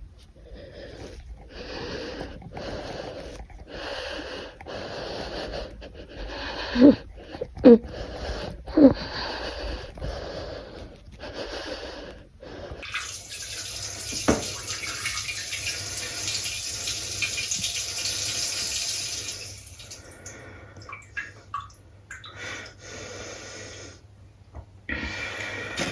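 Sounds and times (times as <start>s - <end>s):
person urinating into toilet: 12.8s - 22.8s.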